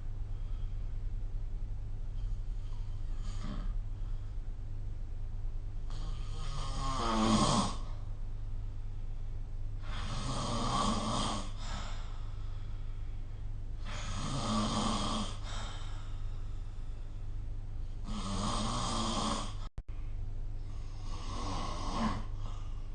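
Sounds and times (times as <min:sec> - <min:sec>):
person snoring: 0:03.1 - 0:04.1, 0:05.9 - 0:08.0, 0:09.8 - 0:11.9, 0:13.8 - 0:16.0, 0:18.0 - 0:19.7, 0:20.6 - 0:22.9.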